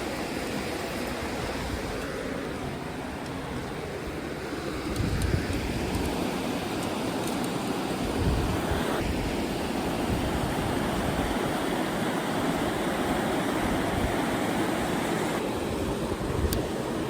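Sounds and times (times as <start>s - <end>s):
wind buffeting microphone: 1.2s - 11.9s
river water rushing: 5.8s - 17.0s.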